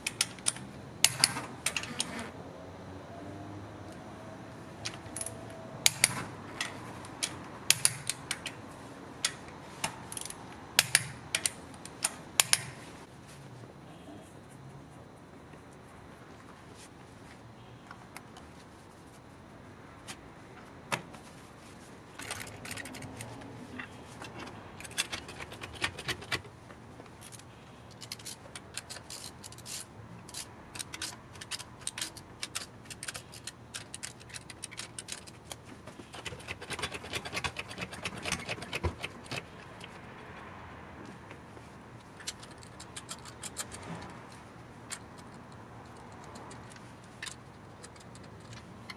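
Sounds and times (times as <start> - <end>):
metal tools clicking and rattling: 9.2 - 12.8, 22.2 - 26.4, 27.2 - 40.0, 42.0 - 48.9.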